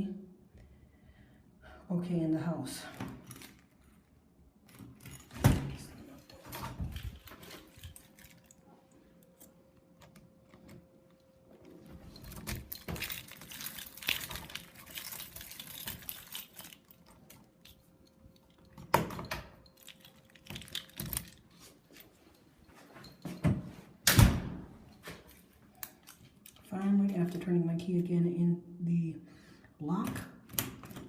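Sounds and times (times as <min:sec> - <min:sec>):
keys jangling: 0:03.1 - 0:04.0, 0:04.6 - 0:08.6, 0:11.8 - 0:23.5
door lock clicking and rattling: 0:12.1 - 0:17.8, 0:18.4 - 0:21.4, 0:30.4 - 0:31.0.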